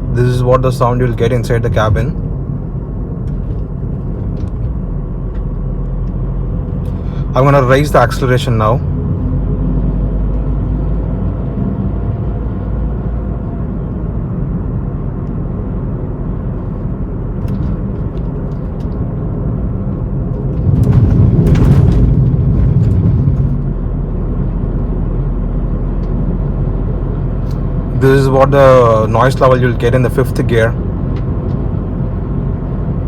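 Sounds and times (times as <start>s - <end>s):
car engine drone: 0.0s - 33.0s
road noise inside car: 0.0s - 33.0s
rush of noise: 20.2s - 24.8s.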